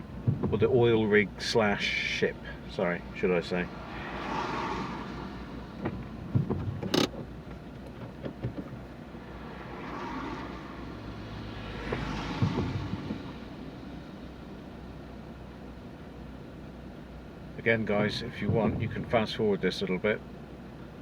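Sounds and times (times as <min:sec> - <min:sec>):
engine and road rumble: 0:00.0 - 0:21.0
tyres hissing on wet road: 0:03.6 - 0:06.3, 0:09.1 - 0:14.2.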